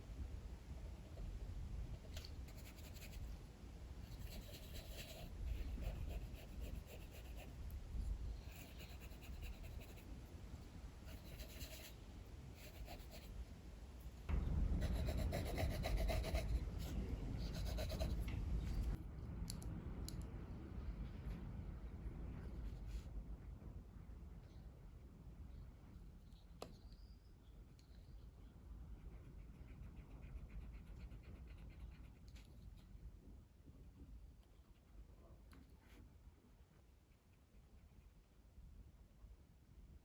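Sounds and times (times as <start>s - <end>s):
drawing tool scratching on paper: 4.1s - 7.5s, 8.5s - 10.0s, 11.1s - 12.0s, 14.8s - 16.7s, 17.4s - 18.2s
strong wind rumble: 14.3s - 24.1s.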